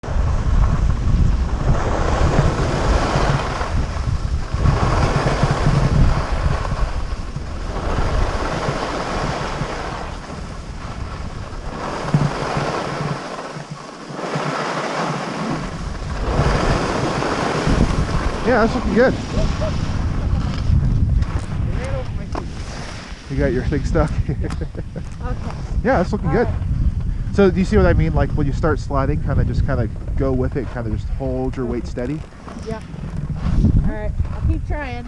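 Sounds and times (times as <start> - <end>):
wind buffeting microphone: 0.0 - 35.0.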